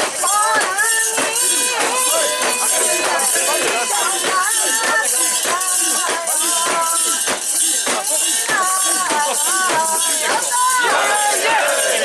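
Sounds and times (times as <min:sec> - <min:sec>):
crowd chanting and singing: 0:00.0 - 0:12.0
metal fittings jangling: 0:00.0 - 0:12.0.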